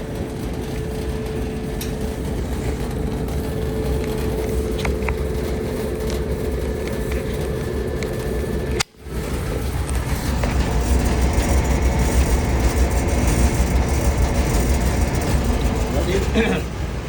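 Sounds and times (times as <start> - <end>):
clothes dryer rumbling: 0.0 - 17.0.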